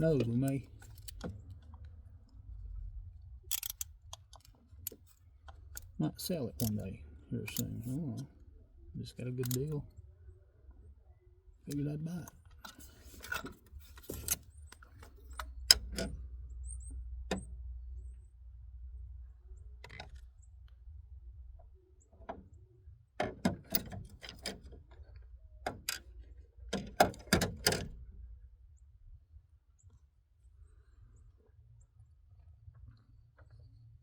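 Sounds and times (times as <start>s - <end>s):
metal hand tools clicking and knocking: 3.5s - 5.0s, 6.6s - 6.8s, 9.4s - 9.7s.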